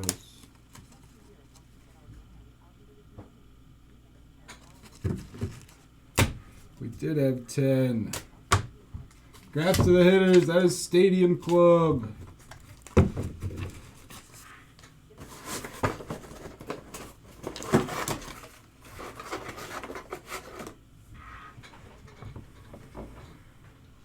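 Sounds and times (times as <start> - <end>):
cards and packaging rustling: 4.6 - 5.9, 9.1 - 20.8.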